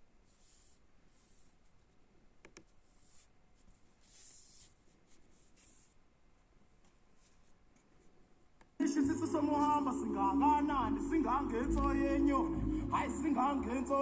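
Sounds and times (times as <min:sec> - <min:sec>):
faint rustling and scratching: 0:00.0 - 0:08.6.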